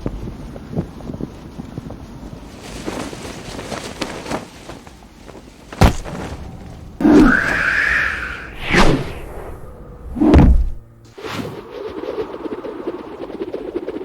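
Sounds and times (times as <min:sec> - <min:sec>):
soft airy rush: 0:02.5 - 0:14.0
loud rushing whoosh: 0:06.4 - 0:14.0.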